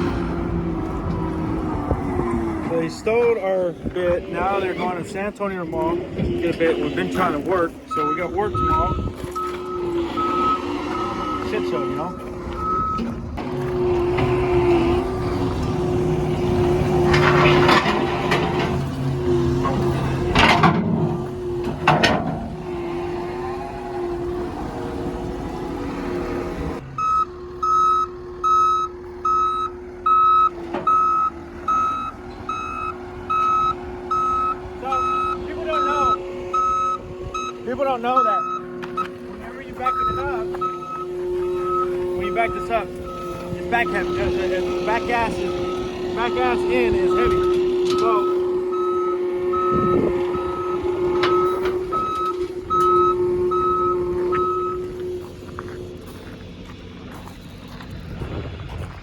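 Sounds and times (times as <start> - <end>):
engine droning: 0.0 - 59.0
backup alarm beeping: 7.2 - 13.4, 26.9 - 55.2
metallic clanks: 12.2 - 22.8, 36.1 - 56.3.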